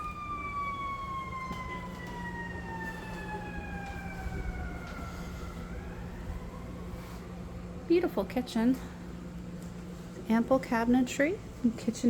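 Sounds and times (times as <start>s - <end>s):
siren wailing: 0.0s - 7.5s.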